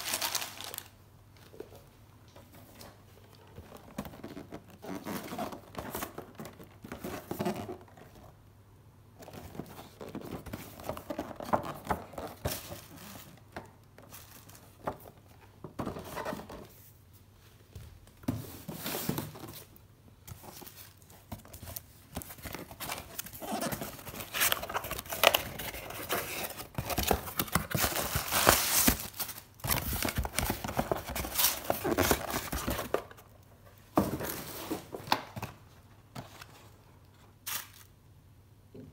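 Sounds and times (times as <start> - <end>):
packaging crinkling and tearing: 0.0 - 1.0, 22.3 - 32.9.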